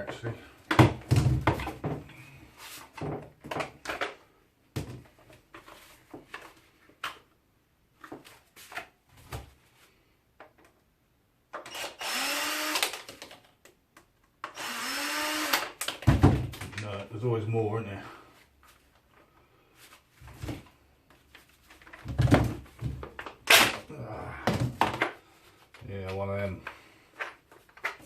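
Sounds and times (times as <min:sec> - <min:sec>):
plastic parts clicking and knocking: 0:00.0 - 0:02.0, 0:03.0 - 0:04.2, 0:12.8 - 0:14.6, 0:15.6 - 0:16.9, 0:21.7 - 0:28.0
cordless drill whirring: 0:11.6 - 0:13.1, 0:14.4 - 0:15.7.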